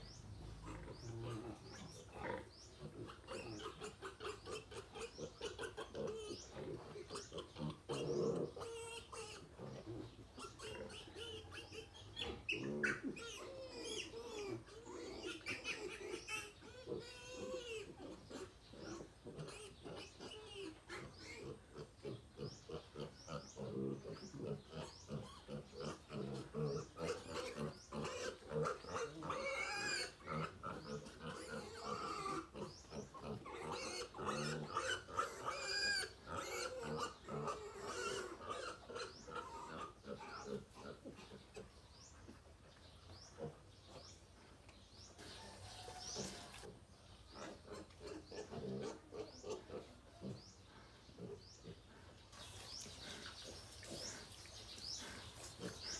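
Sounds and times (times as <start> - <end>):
piglets grunting while eating: 0.0 - 55.9
piglets squealing: 10.4 - 21.9, 23.0 - 40.6, 45.2 - 46.7.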